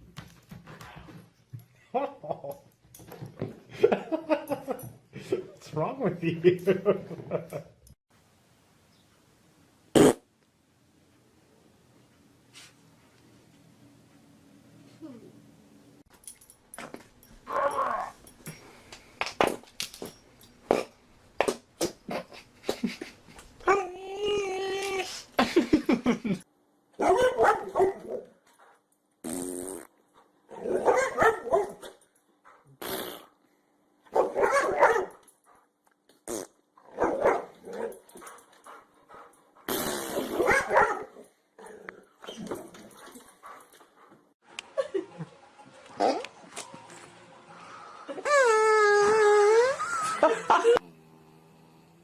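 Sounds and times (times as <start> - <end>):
dog barking and growling: 17.5 - 18.2, 27.0 - 28.4, 30.5 - 32.8, 34.1 - 35.2, 36.8 - 38.4, 39.6 - 44.1
dog barking sharply: 27.0 - 28.2, 30.7 - 31.8, 34.1 - 35.1, 40.4 - 41.1.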